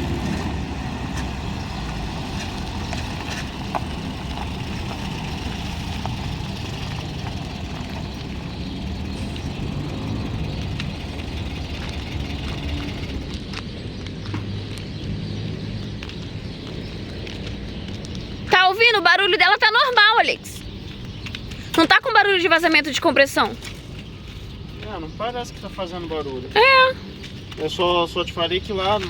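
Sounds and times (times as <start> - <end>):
van engine running: 0.0 - 13.9
faint engine ticks: 0.0 - 14.9.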